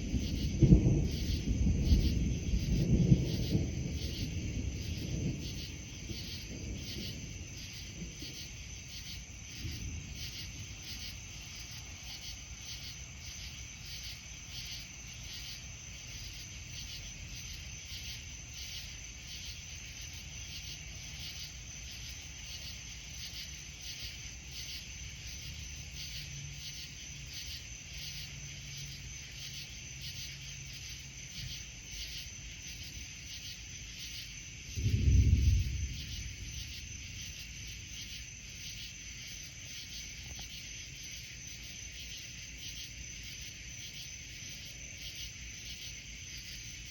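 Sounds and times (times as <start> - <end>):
low thunder rumble: 0.0 - 21.8, 34.0 - 40.0
crickets chirping: 0.0 - 46.9.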